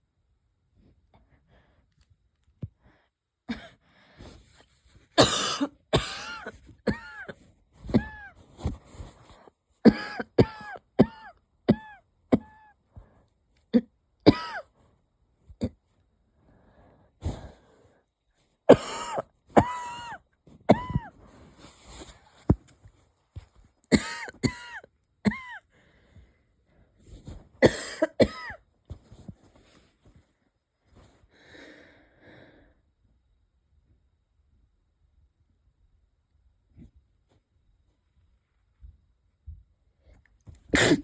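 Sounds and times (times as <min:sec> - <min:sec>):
person coughing wheezily: 0:03.5 - 0:03.8, 0:05.2 - 0:08.4, 0:09.8 - 0:12.7, 0:13.8 - 0:14.7, 0:18.7 - 0:21.1, 0:23.9 - 0:25.6, 0:27.6 - 0:28.6, 0:40.7 - 0:41.0.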